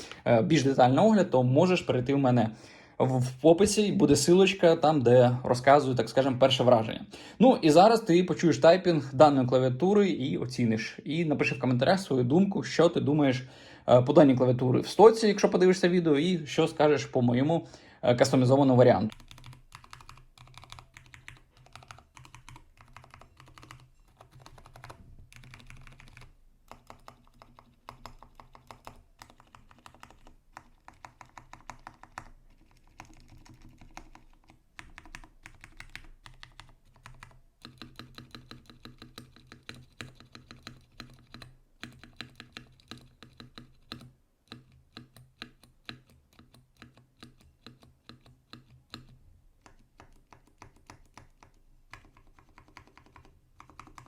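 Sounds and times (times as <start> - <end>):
mechanical keyboard typing: 19.1 - 54.0.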